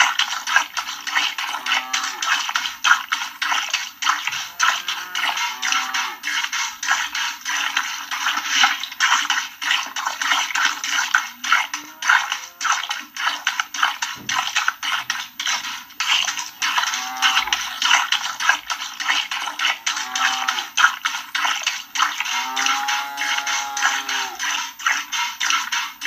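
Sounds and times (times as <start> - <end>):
milk squirting into a bucket: 0.0 - 25.8
cow mooing: 1.5 - 2.4, 4.5 - 6.3, 16.8 - 17.9, 19.8 - 20.8, 22.2 - 24.4.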